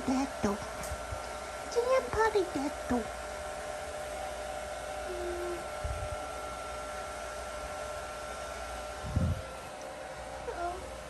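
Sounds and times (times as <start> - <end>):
electric appliance whirring hum: 0.0 - 11.0.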